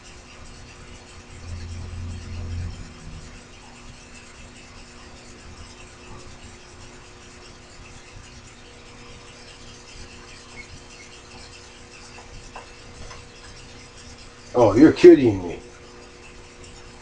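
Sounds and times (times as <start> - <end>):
low rumble: 1.4 - 3.4.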